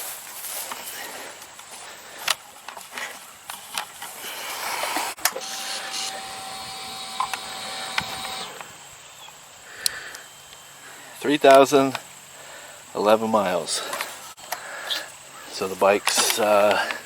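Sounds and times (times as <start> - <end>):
small motor whining: 5.1 - 14.5
sharp clicks: 5.2 - 8.9.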